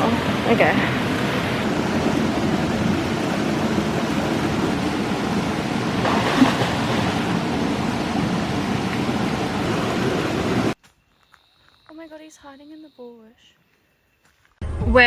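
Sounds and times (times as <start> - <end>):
waterfall rushing: 0.0 - 10.8.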